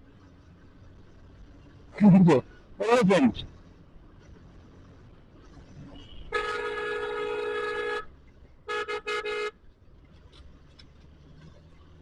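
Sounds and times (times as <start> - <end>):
low traffic rumble: 0.0 - 12.0
vehicle horn honking: 6.0 - 8.1, 8.7 - 9.6.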